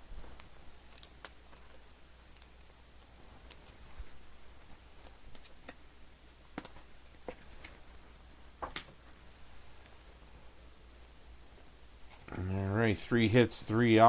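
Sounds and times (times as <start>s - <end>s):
faint low hum: 0.0s - 14.0s
cards clicking and tapping: 6.5s - 7.8s.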